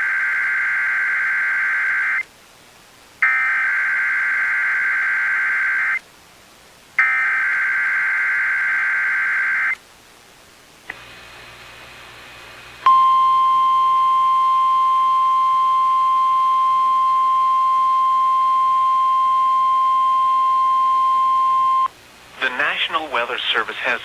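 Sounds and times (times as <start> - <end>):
faint radio hiss: 0.0 - 24.0
high alarm beep: 12.9 - 21.9.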